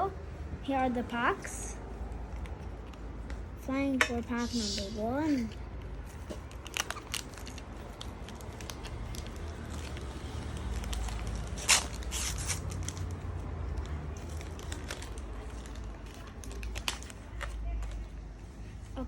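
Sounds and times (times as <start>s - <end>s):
foil pack crinkling and tearing: 6.4s - 13.2s, 14.2s - 18.0s.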